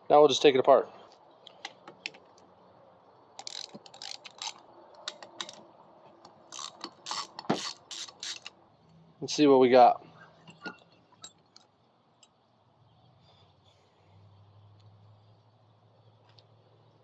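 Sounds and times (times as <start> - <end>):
ratchet wrench clicking: 3.4 - 5.7, 6.4 - 8.6.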